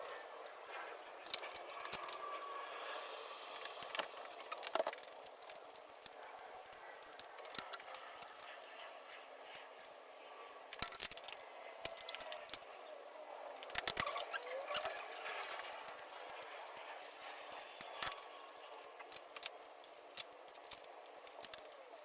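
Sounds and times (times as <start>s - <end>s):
clicks and knocks of tools: 10.7s - 12.7s.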